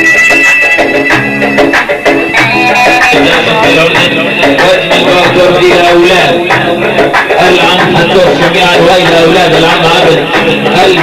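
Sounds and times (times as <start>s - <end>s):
reedy wind instrument melody: 0.0s - 5.2s
steady drum beat: 0.0s - 11.0s.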